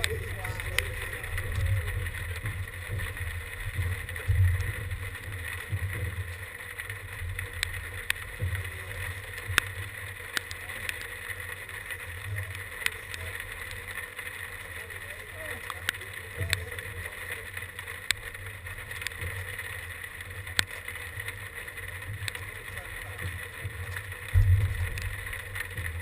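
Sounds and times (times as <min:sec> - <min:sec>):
wind buffeting microphone: 0:00.0 - 0:06.3, 0:23.6 - 0:26.0
raindrops ticking: 0:00.0 - 0:26.0.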